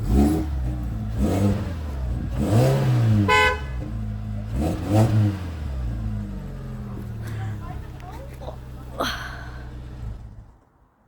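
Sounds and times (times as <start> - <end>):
car engine revving: 0.0 - 10.7
car horn toot: 3.2 - 3.9.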